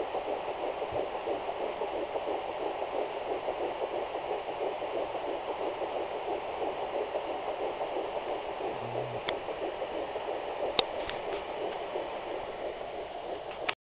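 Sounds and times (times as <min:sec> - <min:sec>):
fetal heartbeat pulsing whoosh: 0:00.0 - 0:13.8
static hiss: 0:00.0 - 0:13.8.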